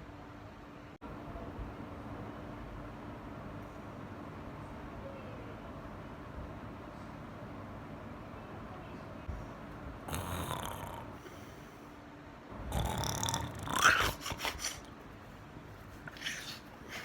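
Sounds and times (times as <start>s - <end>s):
person imitating snoring: 10.1s - 11.6s, 12.6s - 14.9s
quick snorts: 10.1s - 11.7s, 12.7s - 15.0s, 16.1s - 17.0s.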